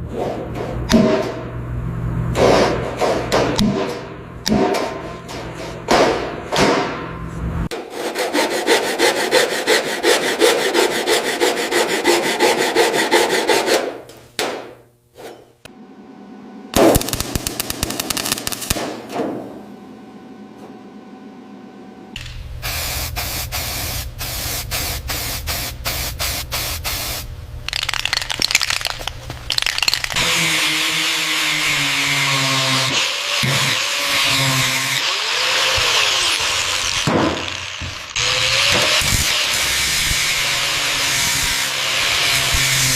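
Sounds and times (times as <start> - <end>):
workshop tools rubbing and scraping: 0.0 - 1.4, 2.3 - 4.1, 4.7 - 6.3, 7.2 - 14.1, 15.1 - 15.6.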